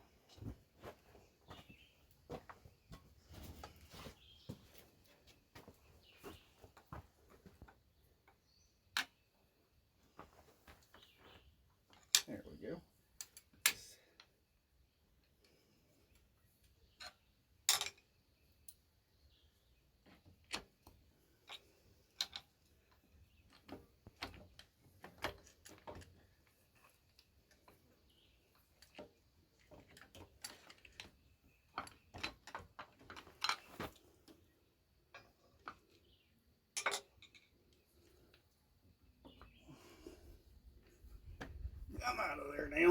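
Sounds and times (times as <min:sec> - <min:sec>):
hand tools clinking on metal: 0:36.8 - 0:37.5.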